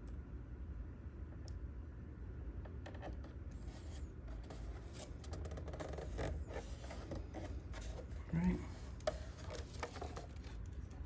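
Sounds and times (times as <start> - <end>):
vinyl decal rustling: 3.0 - 11.0.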